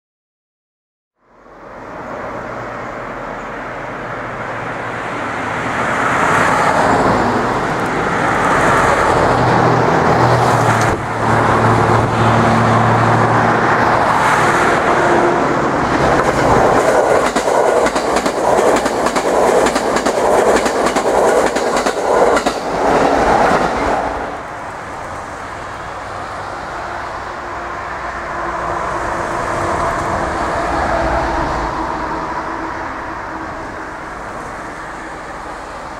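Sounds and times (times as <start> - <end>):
train rumble: 1.9 - 35.9
wheels clickety-clack on rail joints: 6.3 - 11.8, 15.8 - 24.2.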